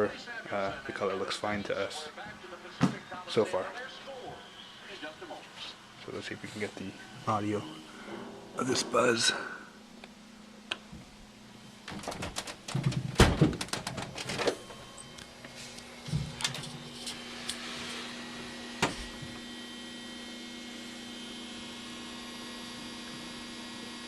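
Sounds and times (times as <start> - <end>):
tv high-pitched electrical buzz: 0.0 - 24.0
knocks and rustles: 11.9 - 14.8.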